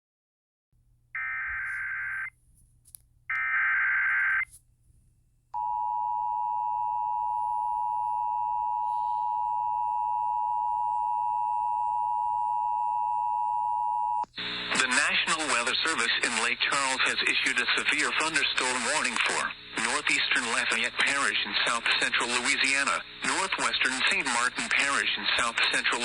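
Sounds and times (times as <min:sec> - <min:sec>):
harsh data bursts: 0:14.4 - 0:26.0.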